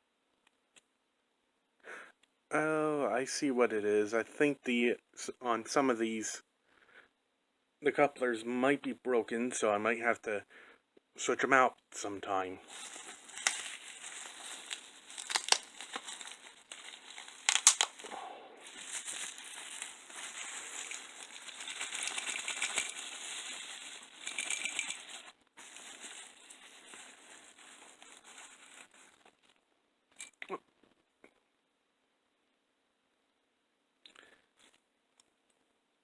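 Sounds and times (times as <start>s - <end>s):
packaging crinkling and rustling: 12.6s - 29.6s.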